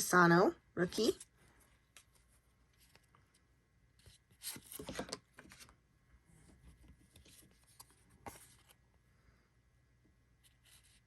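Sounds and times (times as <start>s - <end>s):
cards sliding and rubbing: 4.0s - 5.7s.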